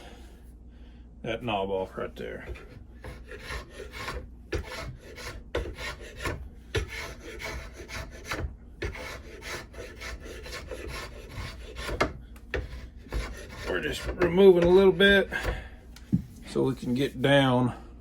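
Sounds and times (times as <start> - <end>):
rasp scraping wood: 2.4 - 15.7.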